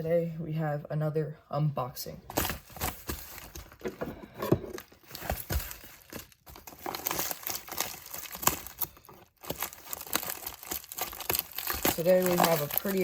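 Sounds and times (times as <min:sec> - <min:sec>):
packaging crinkling and tearing: 0:02.3 - 0:04.0, 0:04.7 - 0:13.0.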